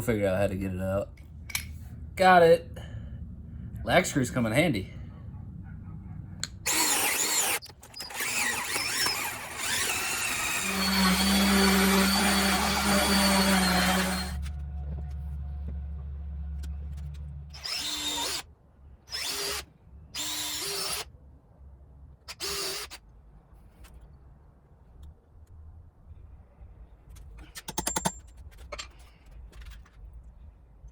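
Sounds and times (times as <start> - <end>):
power drill drilling into wood: 6.7 - 14.4, 17.6 - 18.4, 19.1 - 19.6, 20.2 - 21.0, 22.4 - 23.0.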